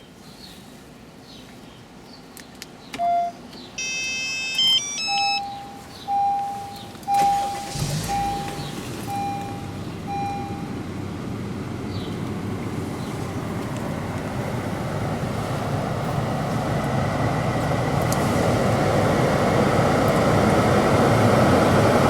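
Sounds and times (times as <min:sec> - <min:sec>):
button clicks: 0:03.0 - 0:05.6
steady beeps: 0:03.0 - 0:10.7
short electronic melody: 0:03.8 - 0:05.8
car engine cranking and running: 0:07.0 - 0:22.0.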